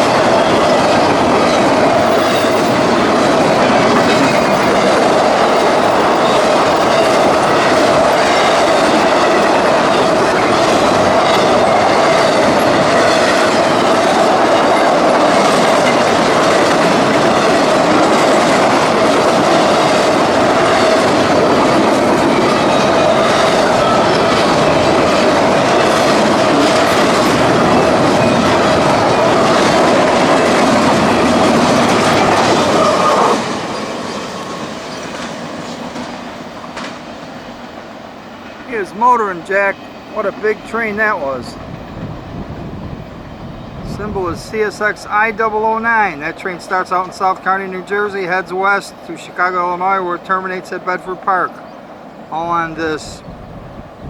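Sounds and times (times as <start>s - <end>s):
wheel whine: 0.0s - 38.7s
train wheels clacking over rails: 0.0s - 53.3s.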